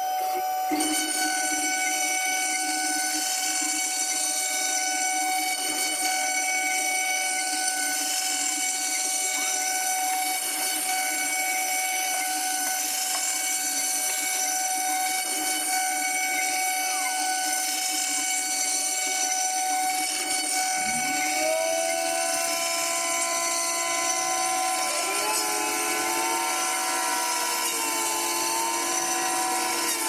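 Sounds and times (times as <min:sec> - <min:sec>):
router spindle whine: 0:06.5 - 0:30.0.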